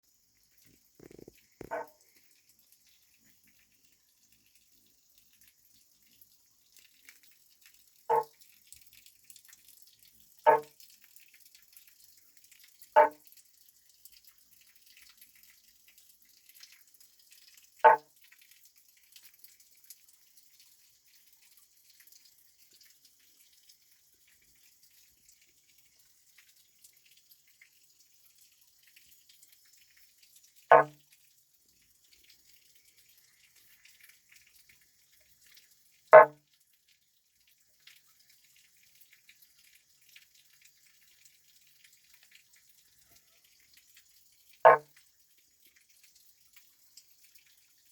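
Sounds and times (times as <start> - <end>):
frog calling: 1.6 - 1.9, 10.5 - 10.7, 13.0 - 13.2, 30.7 - 30.9.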